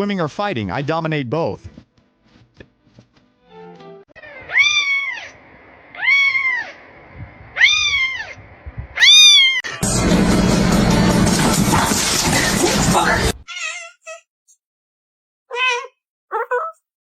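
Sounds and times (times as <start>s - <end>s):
cat meowing: 4.2s - 6.8s, 7.6s - 8.4s, 9.0s - 9.8s, 13.4s - 14.2s, 15.5s - 16.8s
loud music: 9.8s - 13.4s.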